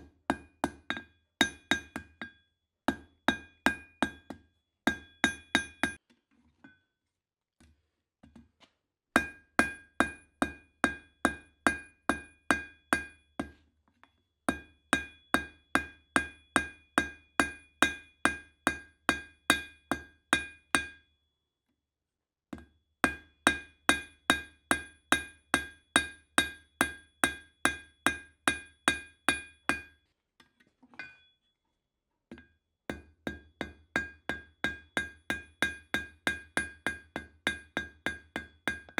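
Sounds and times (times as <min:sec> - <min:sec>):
hammer striking steel on anvil: 0:04.9 - 0:06.0, 0:14.5 - 0:21.0, 0:23.1 - 0:29.9, 0:32.9 - 0:38.9.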